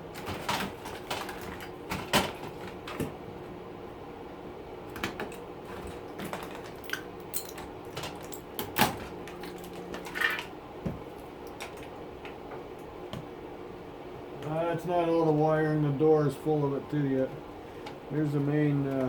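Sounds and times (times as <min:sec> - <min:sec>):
steady low hum: 0:00.0 - 0:19.0
dishwasher parts clattering: 0:00.1 - 0:03.1, 0:05.0 - 0:10.5.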